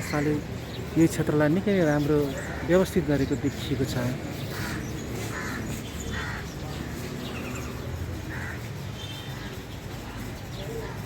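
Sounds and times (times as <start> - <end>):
short harsh bird calls: 4.1 - 9.8.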